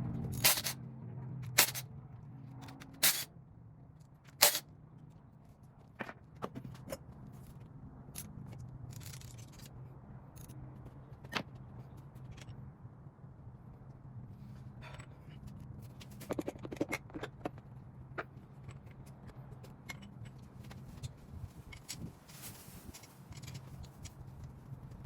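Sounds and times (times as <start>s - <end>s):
metal tools clinking and knocking: 0.3s - 0.8s, 1.5s - 1.8s, 2.6s - 3.3s, 4.4s - 4.6s, 8.2s - 9.8s, 22.8s - 24.5s.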